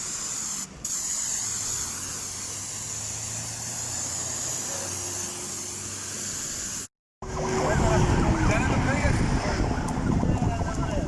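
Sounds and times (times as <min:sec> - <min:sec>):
engine running: 0:07.2 - 0:11.0.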